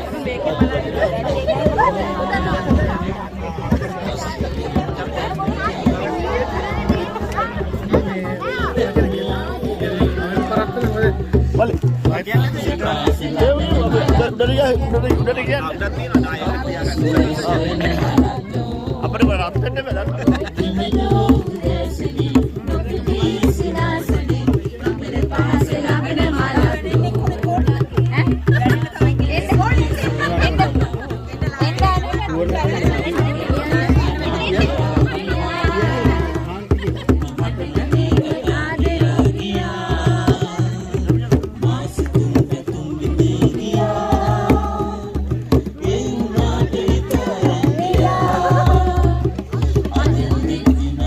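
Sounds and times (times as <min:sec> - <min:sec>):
music with singing: 0:00.0 - 0:51.0
steady drum beat: 0:00.0 - 0:51.0
steady bass beat: 0:39.4 - 0:51.0.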